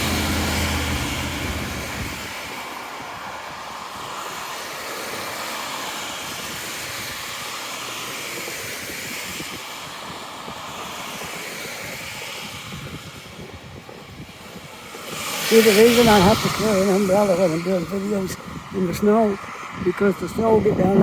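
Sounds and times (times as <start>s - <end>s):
road traffic hiss: 0.0s - 21.0s.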